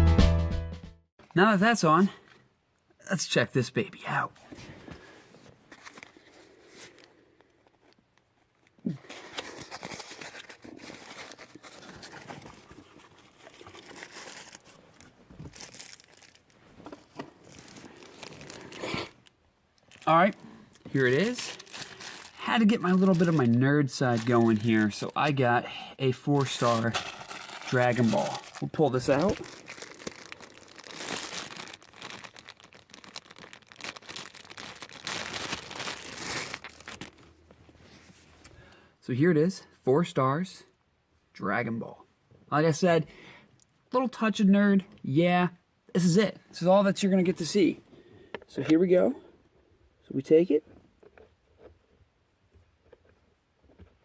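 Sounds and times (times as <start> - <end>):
packaging crinkling and rustling: 4.4 - 38.5.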